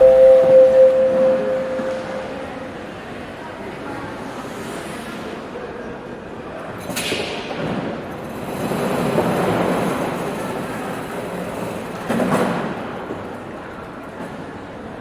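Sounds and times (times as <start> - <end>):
airport terminal ambience: 0.0 - 3.2.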